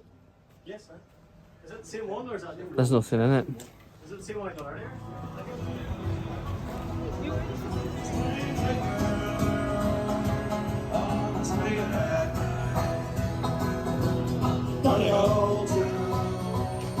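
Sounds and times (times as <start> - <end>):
upbeat country bluegrass music: 4.9 - 17.0
person singing: 5.0 - 17.0
plucked guitar and banjo: 5.0 - 17.0.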